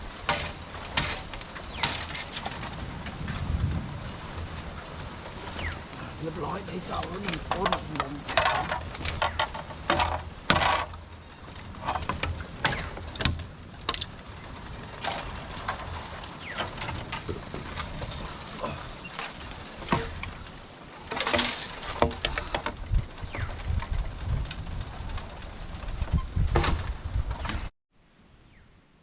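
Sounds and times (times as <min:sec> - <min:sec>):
short rustling scrapes: 0:14.9 - 0:22.6.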